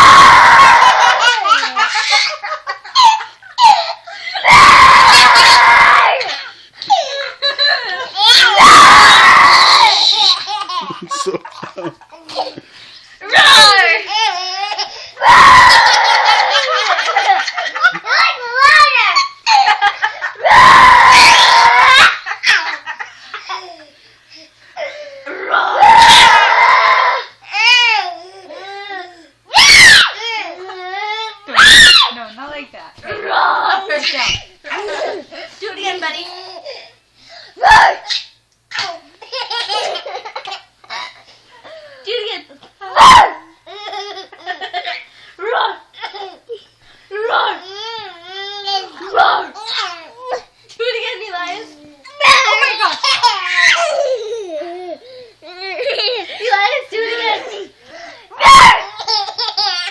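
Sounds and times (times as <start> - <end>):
boy screaming: 0.0 - 2.2, 4.4 - 6.3, 8.2 - 10.4, 13.2 - 14.0, 15.2 - 16.9, 20.4 - 22.4, 25.3 - 28.0, 29.5 - 30.2, 31.5 - 32.2, 37.6 - 38.2, 42.9 - 43.4, 52.2 - 54.2, 58.4 - 59.0
baby laughing: 1.0 - 4.0, 38.8 - 41.0, 59.0 - 59.9.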